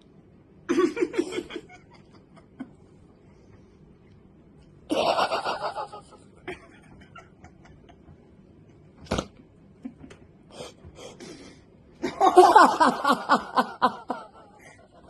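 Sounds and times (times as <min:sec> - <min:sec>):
snickering laughter: 0:00.7 - 0:02.9, 0:04.9 - 0:08.2, 0:12.0 - 0:15.0.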